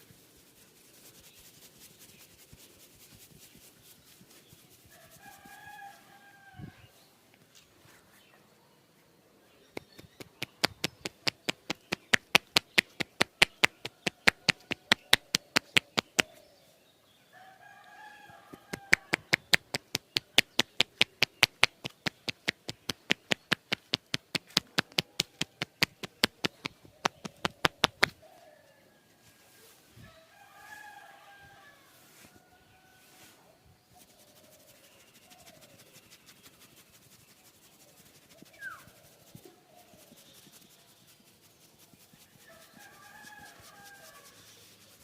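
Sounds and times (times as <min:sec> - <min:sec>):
hands tapping on body: 0:09.8 - 0:16.3, 0:18.5 - 0:28.2.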